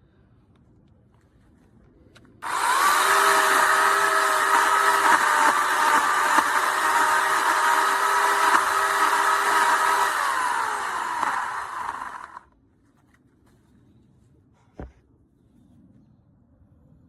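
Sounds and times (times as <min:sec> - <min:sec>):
electric chainsaw motor whine: 0:02.4 - 0:12.4.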